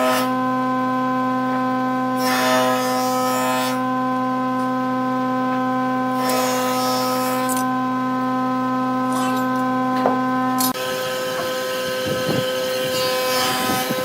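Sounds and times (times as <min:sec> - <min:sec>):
wood lathe motor humming: 0:06.3 - 0:14.0
tool scraping spinning wood: 0:09.0 - 0:14.0.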